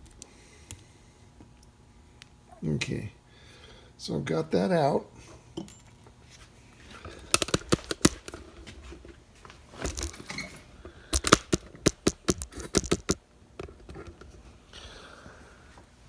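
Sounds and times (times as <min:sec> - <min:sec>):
metal tools clicking and clinking: 0:07.4 - 0:08.4
quick taps: 0:11.2 - 0:13.2.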